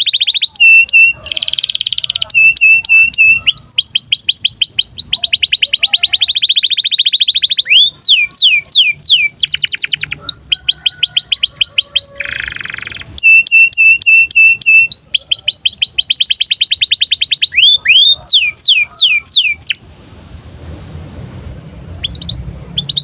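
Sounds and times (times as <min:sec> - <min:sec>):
canary singing: 0:00.0 - 0:23.0.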